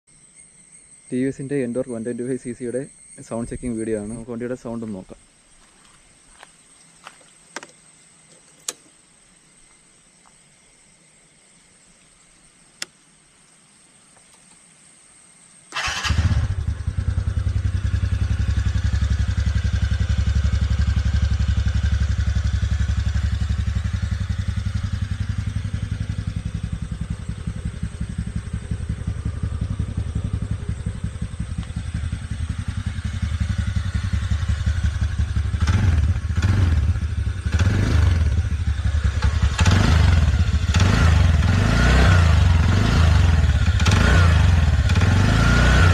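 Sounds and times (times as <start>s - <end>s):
scooter engine starting and idling: 15.7s - 45.9s
scooter engine revving: 15.8s - 45.9s.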